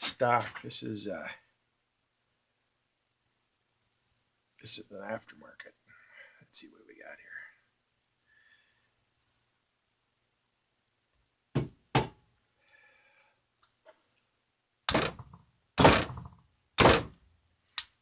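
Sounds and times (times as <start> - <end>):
hammer striking metal pin: 14.9 - 17.2.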